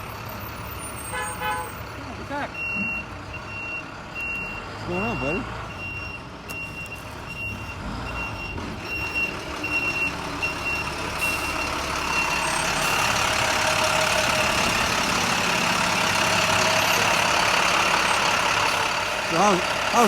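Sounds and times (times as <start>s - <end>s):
motor vehicle noise: 0.0s - 20.0s
reversing alarm beeping: 2.5s - 13.0s.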